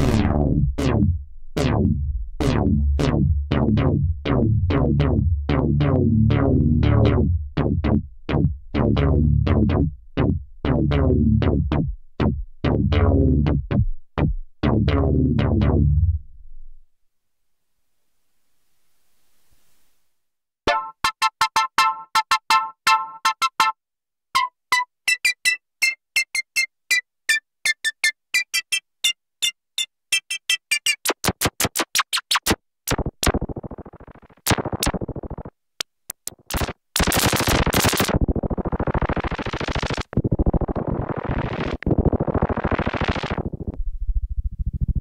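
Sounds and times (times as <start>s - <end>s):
short plucked synth notes: 0.0s - 16.2s
fast repeated synth notes: 36.5s - 43.6s
buzzy noisy synth sweeps: 36.5s - 43.7s.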